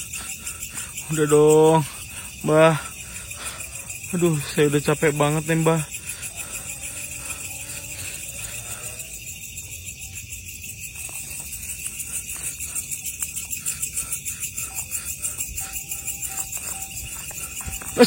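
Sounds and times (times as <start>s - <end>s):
night insects trilling: 0.0s - 18.0s.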